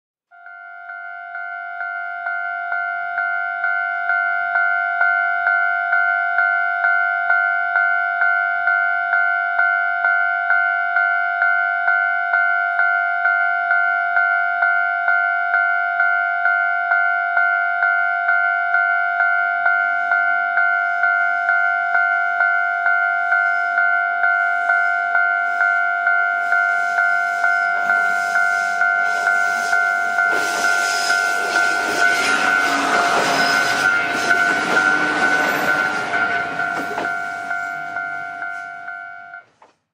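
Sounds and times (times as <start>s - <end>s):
level-crossing warning bell: 0.3s - 39.5s
train rumble and wheel clatter: 26.4s - 38.7s.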